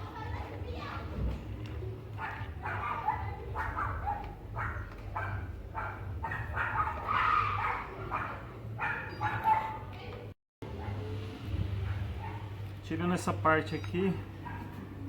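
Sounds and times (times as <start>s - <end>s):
dog barking: 2.1s - 9.9s, 11.8s - 12.6s, 14.4s - 14.8s.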